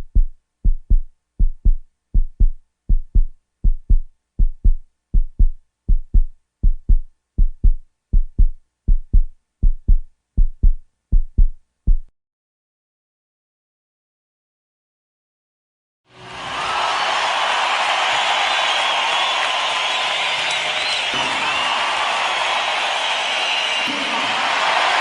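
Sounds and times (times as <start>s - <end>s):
heartbeat thumps: 0.0s - 12.1s.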